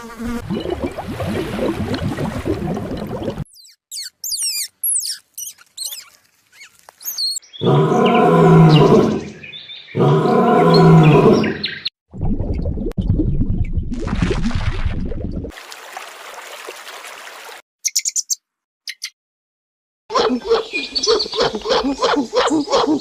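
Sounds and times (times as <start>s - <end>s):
high sweeping animal chirps: 3.5s - 7.7s.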